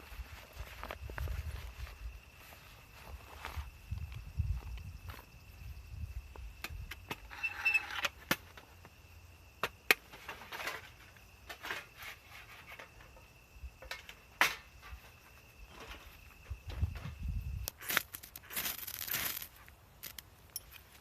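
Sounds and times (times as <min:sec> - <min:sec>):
handling rustles: 0:00.0 - 0:05.3, 0:17.8 - 0:21.0.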